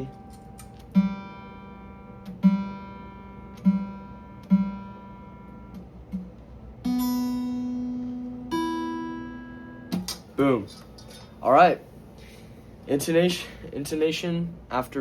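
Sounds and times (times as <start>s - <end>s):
acoustic guitar string plucked: 0.0s - 11.4s.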